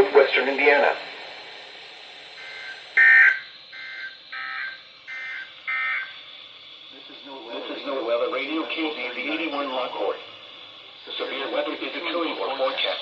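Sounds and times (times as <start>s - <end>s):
short buzzing data bursts: 2.3s - 6.3s.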